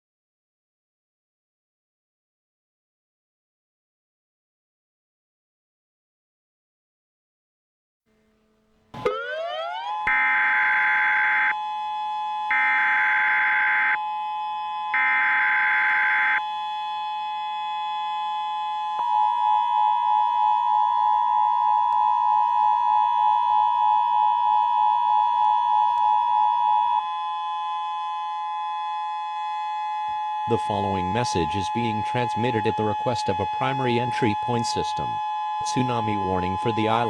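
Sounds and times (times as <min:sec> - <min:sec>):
two-tone alert signal: 0:09.0 - 0:11.6
pulsing siren tone: 0:09.0 - 0:37.0.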